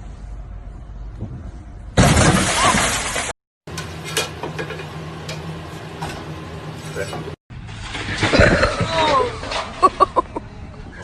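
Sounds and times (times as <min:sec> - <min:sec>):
loud noisy crash: 0:02.0 - 0:03.3.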